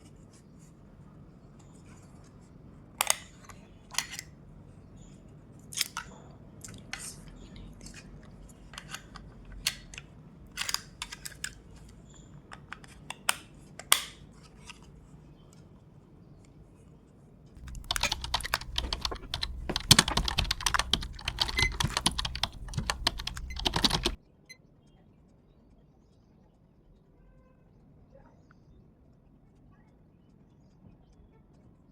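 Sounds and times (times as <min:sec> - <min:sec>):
digital timer clicking: 0:17.6 - 0:24.2.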